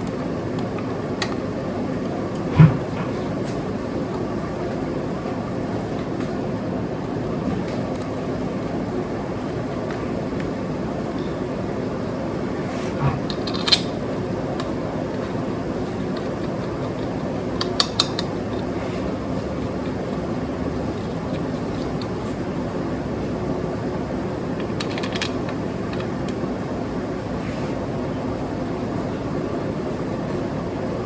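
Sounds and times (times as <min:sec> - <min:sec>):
mechanical hum: 0:00.0 - 0:31.0.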